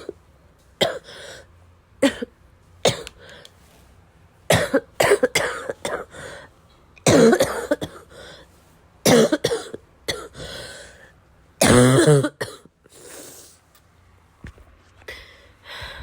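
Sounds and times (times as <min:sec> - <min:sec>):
person coughing: 0:00.8 - 0:01.4, 0:02.0 - 0:02.3, 0:02.9 - 0:03.1, 0:04.5 - 0:06.4, 0:07.0 - 0:08.2, 0:09.0 - 0:10.8, 0:11.6 - 0:12.7.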